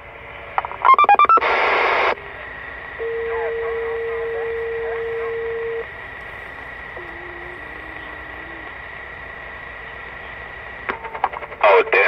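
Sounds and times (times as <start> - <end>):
steady low radio tone: 0.0 - 12.0
thin high whine: 0.0 - 12.0
faint garbled voice: 1.7 - 10.8.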